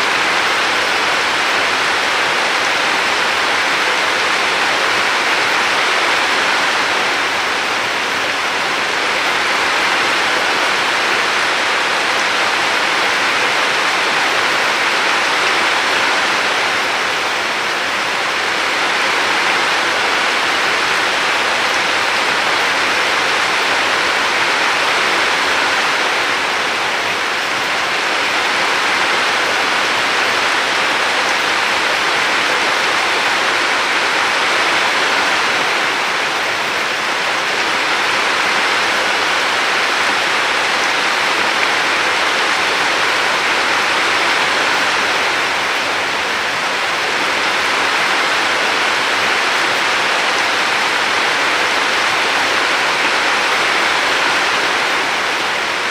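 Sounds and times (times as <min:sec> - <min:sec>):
river water rushing: 0:00.0 - 0:55.9.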